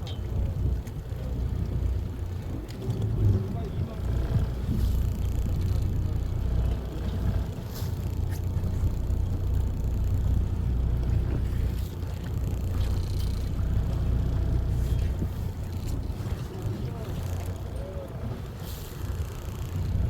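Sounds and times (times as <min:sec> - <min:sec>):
boat engine rumbling: 0:00.0 - 0:20.0
faint clicks: 0:11.0 - 0:14.0, 0:14.9 - 0:17.9.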